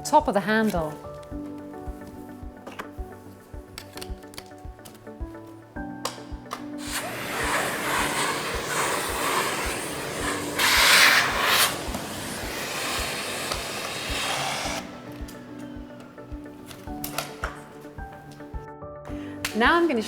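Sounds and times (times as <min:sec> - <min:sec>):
vacuum cleaner running: 0:06.8 - 0:16.4.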